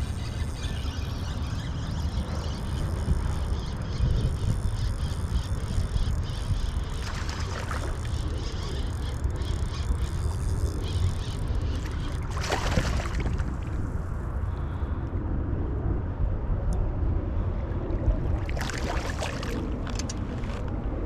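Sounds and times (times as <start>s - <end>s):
river current rumble: 0.0s - 14.8s
wind on microphone: 0.0s - 21.0s
water splashing: 12.2s - 13.8s, 18.4s - 20.0s.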